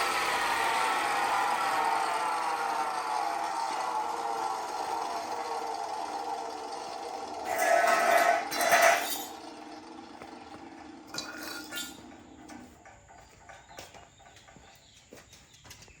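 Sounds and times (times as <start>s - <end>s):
cut-off saw motor spinning down: 0.0s - 12.5s
harsh metallic noise: 7.3s - 9.8s, 10.8s - 12.4s.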